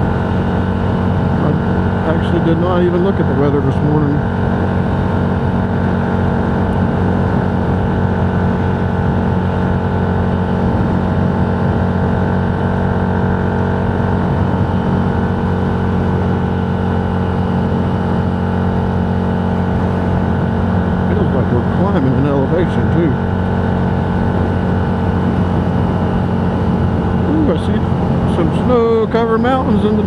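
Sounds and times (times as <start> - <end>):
road noise: 0.0 - 30.0
vehicle engine drone: 0.0 - 30.0.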